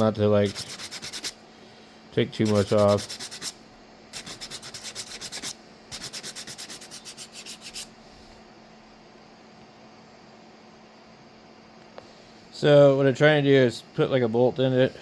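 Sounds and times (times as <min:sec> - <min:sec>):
sandpaper rubbing plastic: 0:00.4 - 0:01.4, 0:02.3 - 0:03.6, 0:04.2 - 0:07.9.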